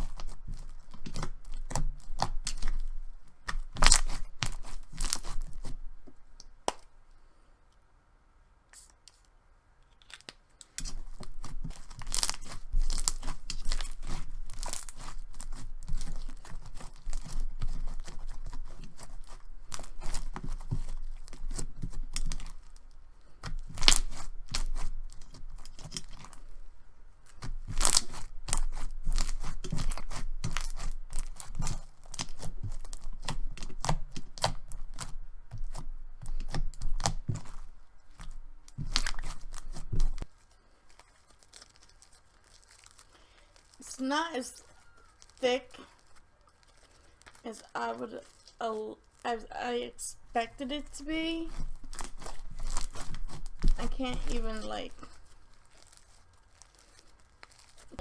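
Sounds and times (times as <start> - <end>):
slime squished by hand: 0.0 - 5.8, 10.0 - 22.8, 23.4 - 26.5, 27.3 - 49.3, 50.8 - 58.0.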